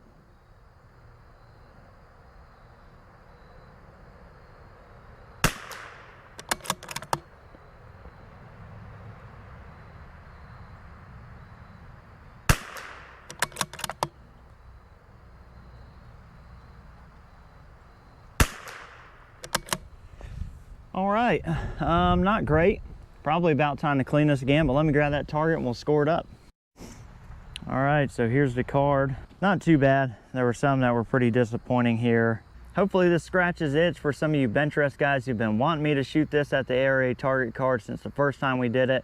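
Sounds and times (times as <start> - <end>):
rifle shots: 5.4 - 7.2, 12.5 - 14.1, 18.4 - 19.8
rifle bolt clicking: 5.7 - 7.2, 12.6 - 14.2, 18.6 - 19.9.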